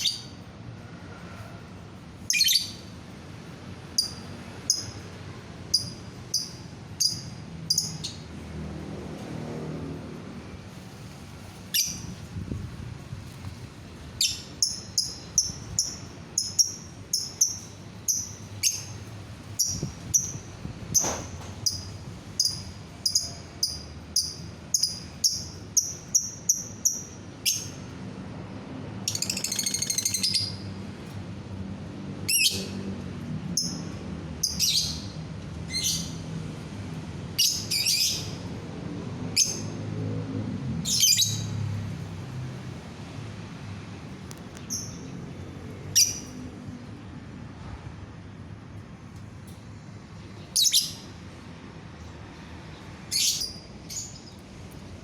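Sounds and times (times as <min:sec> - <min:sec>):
bird chirping: 0:29.1 - 0:30.6, 0:50.4 - 0:51.1.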